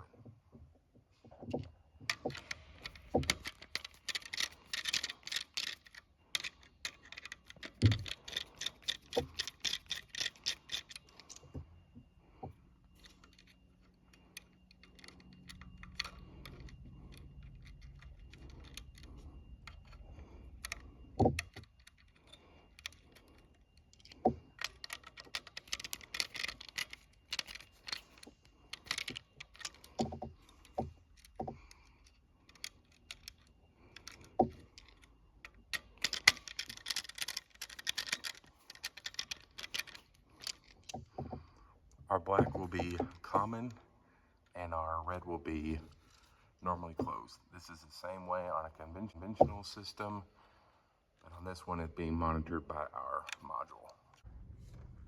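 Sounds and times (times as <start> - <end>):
faint low hum: 0.0 - 55.0
clicks and scrapes of wiring work: 1.3 - 11.7, 12.4 - 43.8.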